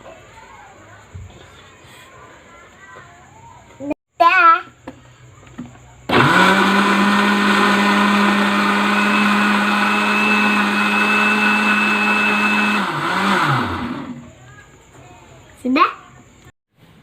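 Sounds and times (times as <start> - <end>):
electric blender running: 6.1 - 14.3.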